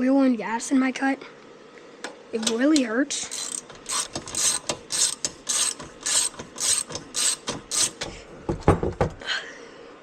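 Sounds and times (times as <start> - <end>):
ratchet wrench clicking: 3.1 - 8.1.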